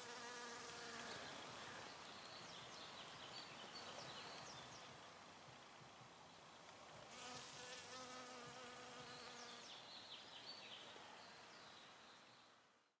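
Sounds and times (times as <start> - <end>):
bee buzzing: 0.0 - 1.8, 7.1 - 9.6
faint hiss: 0.0 - 13.0.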